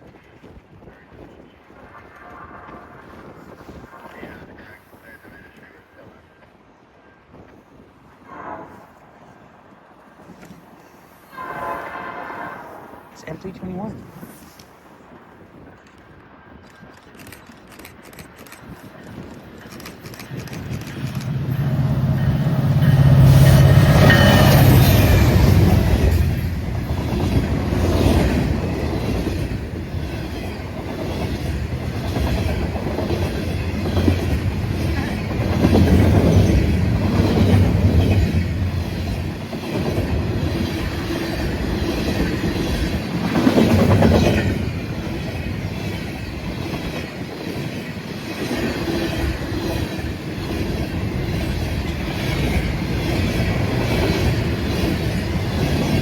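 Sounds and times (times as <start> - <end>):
train wheels on rails: 0.0 - 56.0
locomotive engine: 19.7 - 28.9.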